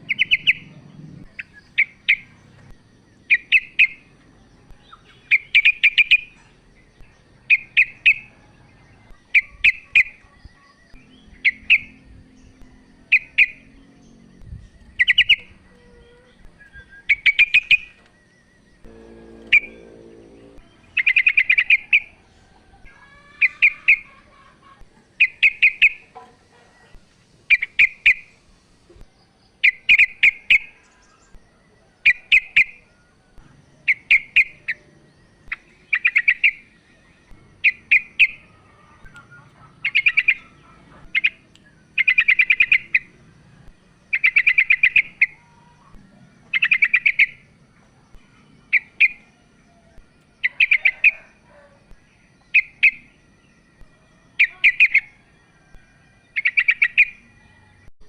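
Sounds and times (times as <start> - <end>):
bulbul buzzy calling chatter: 18.9 - 22.2.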